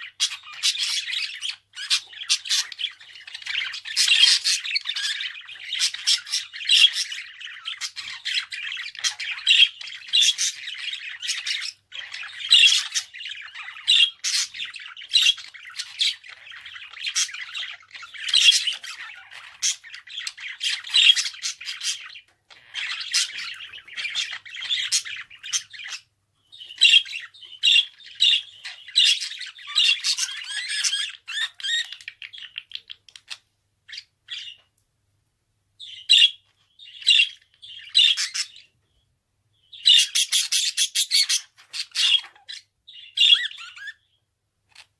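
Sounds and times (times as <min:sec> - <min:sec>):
budgerigar chattering: 0:39.8 - 0:44.0.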